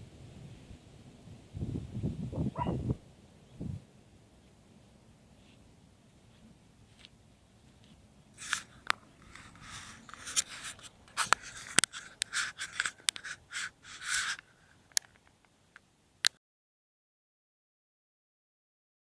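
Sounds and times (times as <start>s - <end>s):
lone clicks: 7.8s - 16.4s.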